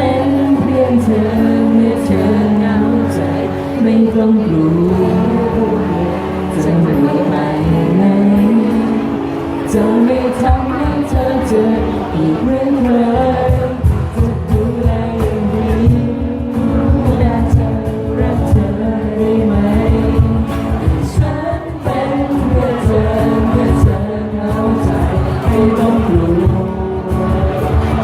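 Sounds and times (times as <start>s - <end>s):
pop song with full band: 0.0s - 28.0s
steady drum beat: 13.2s - 28.0s.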